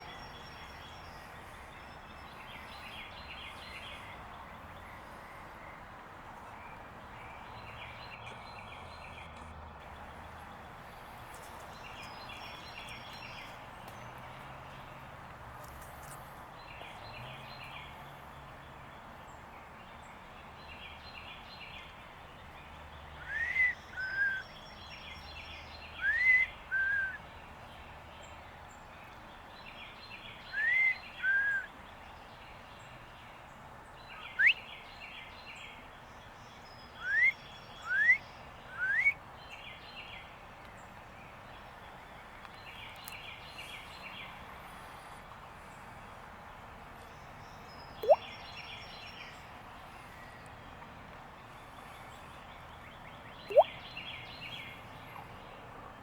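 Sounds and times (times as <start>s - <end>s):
outdoor background noise: 0.0s - 56.0s
clear whistles: 23.3s - 24.4s, 26.0s - 27.2s, 30.6s - 31.7s, 37.0s - 39.2s.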